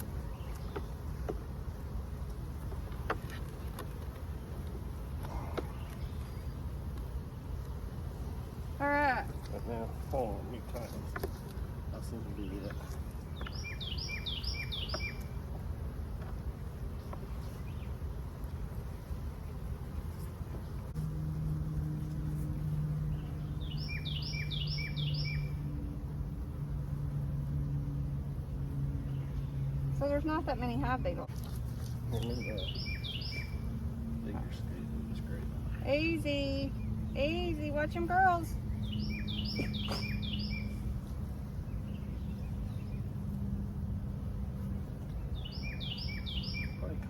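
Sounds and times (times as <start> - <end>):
songbird singing: 0.0 - 47.0
steady low hum: 0.0 - 47.0
bird chirps: 12.4 - 15.4, 23.1 - 25.6, 32.1 - 33.8, 38.6 - 40.9, 45.2 - 47.0.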